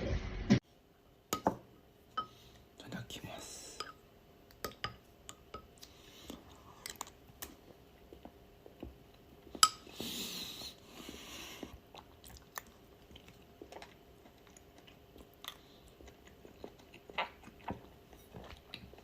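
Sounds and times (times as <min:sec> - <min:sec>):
dog chewing and crunching food: 0:06.7 - 0:19.0.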